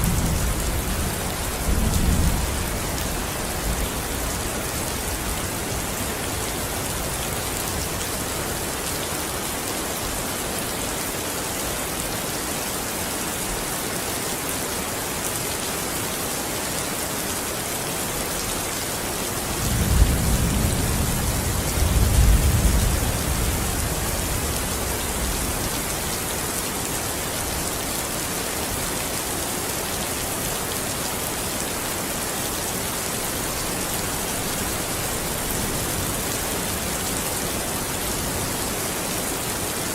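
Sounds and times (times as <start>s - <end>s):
thunder rumbling: 0.0s - 4.5s
steady rain falling: 0.0s - 39.9s.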